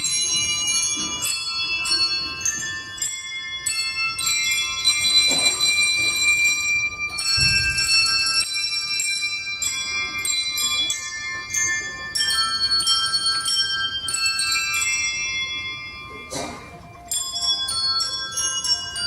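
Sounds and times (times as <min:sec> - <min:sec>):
handbells playing a tune: 0:00.0 - 0:19.0.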